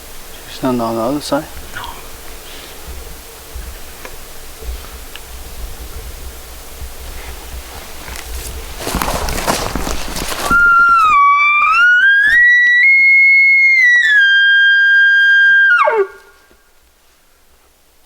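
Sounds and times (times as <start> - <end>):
elk bugling: 1.5 - 16.6
rustling: 1.5 - 17.8.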